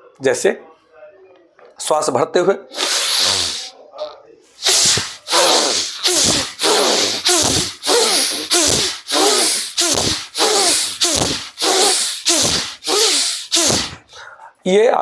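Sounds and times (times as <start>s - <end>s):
forceful rapid breathing: 2.7s - 3.7s, 4.6s - 14.2s.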